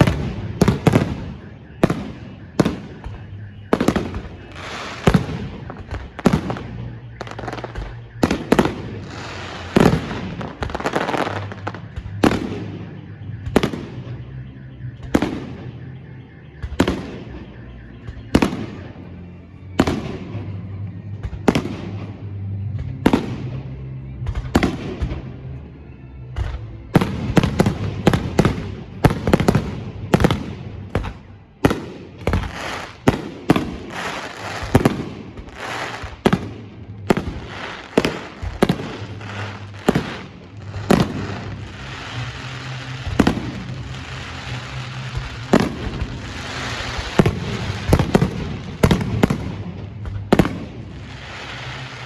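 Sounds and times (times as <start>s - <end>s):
firework crackling: 0.0s - 12.7s, 27.0s - 52.0s
firework shells bursting with bangs: 26.4s - 52.0s.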